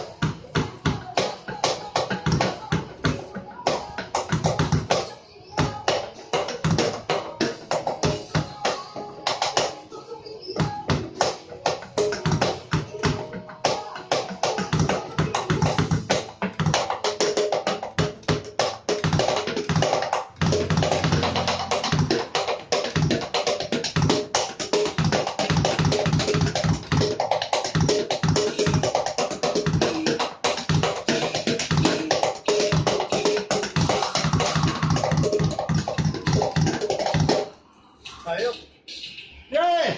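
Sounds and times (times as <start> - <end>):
tyres struck as drums: 14.5 - 37.5.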